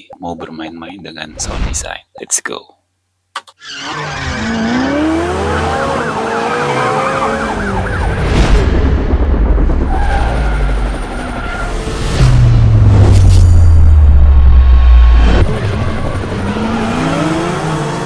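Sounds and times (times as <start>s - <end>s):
car engine revving: 3.7s - 18.0s.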